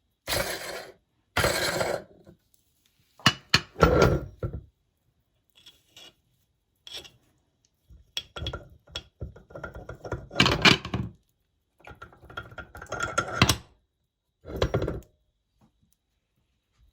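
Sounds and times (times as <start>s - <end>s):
meat grinder clattering: 0.3s - 2.1s.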